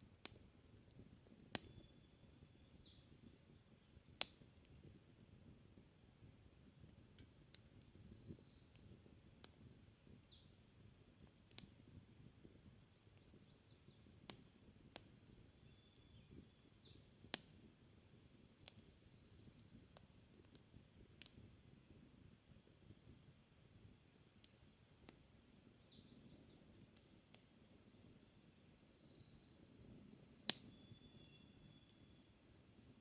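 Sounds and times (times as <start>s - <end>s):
campfire crackling: 0.0s - 33.0s
bird singing with trill: 13.0s - 17.0s, 29.1s - 32.3s.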